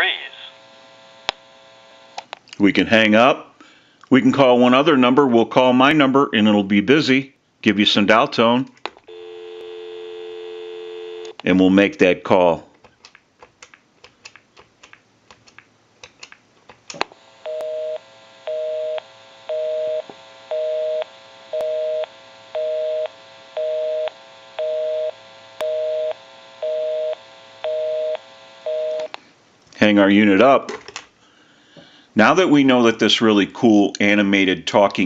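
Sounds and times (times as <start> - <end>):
busy signal beeping: 21.6 - 29.1.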